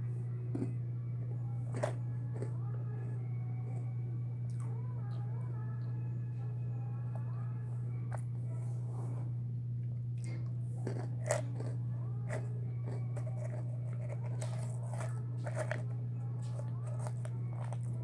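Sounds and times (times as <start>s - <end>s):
low electrical hum: 0.0s - 18.0s
person chewing and crunching food: 0.3s - 4.8s, 10.2s - 18.0s.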